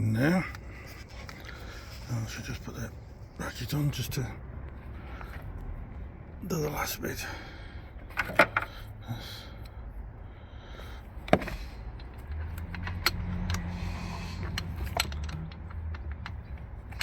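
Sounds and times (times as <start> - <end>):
metal tools clinking: 12.0 - 17.0
ratchet clicking: 12.0 - 17.0.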